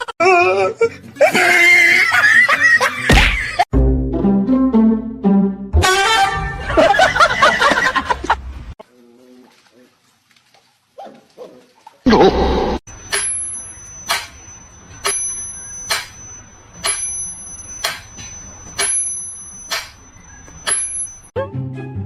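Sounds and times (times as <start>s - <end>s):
small bell ringing: 12.9s - 21.3s.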